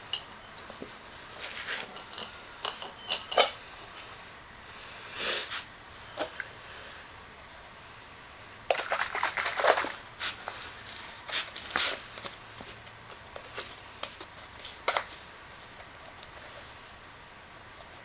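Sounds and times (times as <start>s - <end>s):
objects clicking and scraping: 0.1s - 3.6s, 8.7s - 15.2s.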